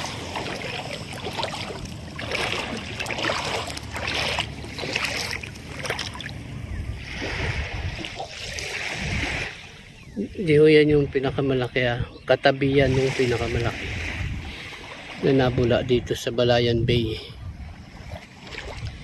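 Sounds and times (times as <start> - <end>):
seawater washing and sloshing: 0.0 - 16.6, 17.2 - 19.0
wind rumble on microphone: 0.0 - 19.0.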